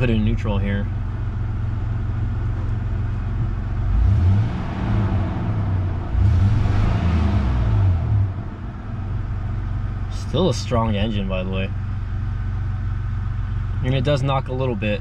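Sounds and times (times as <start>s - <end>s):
engine revving with misfire: 3.7s - 8.6s.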